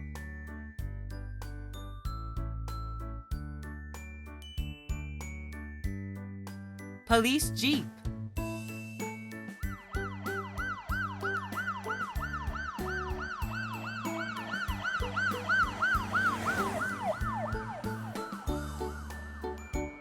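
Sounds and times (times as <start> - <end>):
cheerful background music: 0.0 - 20.0
police siren yelping: 9.9 - 18.7.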